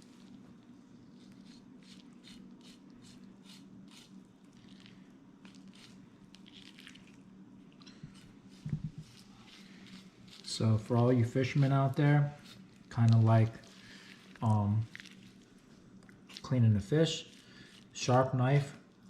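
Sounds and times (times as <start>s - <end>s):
knife slicing meat: 9.0s - 10.7s.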